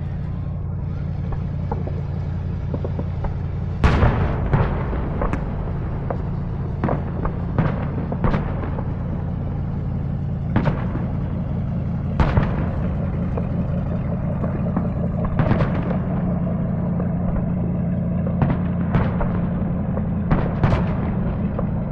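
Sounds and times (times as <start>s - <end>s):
fireworks bangs: 0.0s - 21.9s
steady low hum: 0.0s - 21.9s.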